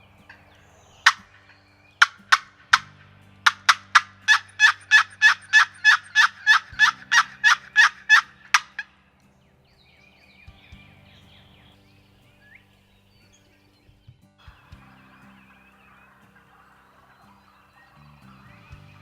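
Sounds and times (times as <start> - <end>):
wild turkey calling: 0.0 - 9.3, 14.4 - 19.0.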